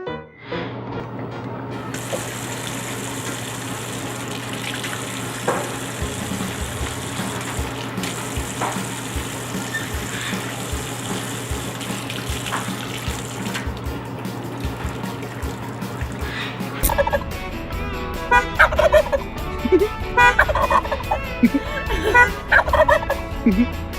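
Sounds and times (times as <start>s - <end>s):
running water rushing: 1.8s - 17.5s.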